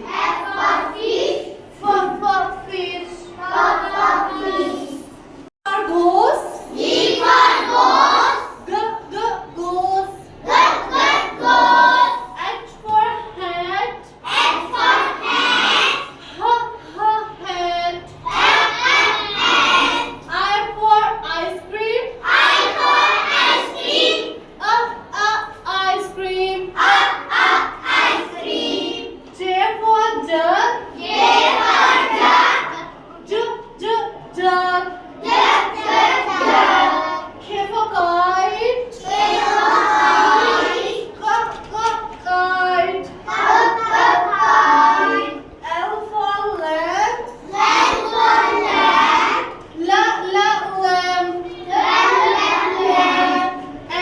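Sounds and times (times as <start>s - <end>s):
children chanting in unison: 0.0s - 5.2s, 6.4s - 8.8s, 10.2s - 12.5s, 14.2s - 16.8s, 18.2s - 20.4s, 22.2s - 25.1s, 26.0s - 29.3s, 30.8s - 33.0s, 34.9s - 37.6s, 38.4s - 41.5s, 42.8s - 45.5s, 47.3s - 54.0s.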